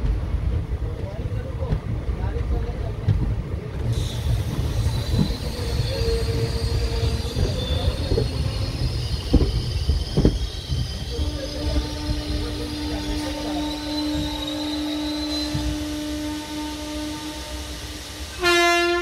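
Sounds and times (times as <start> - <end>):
train rumble: 0.0 - 19.0
train wheel squeal: 3.9 - 19.0.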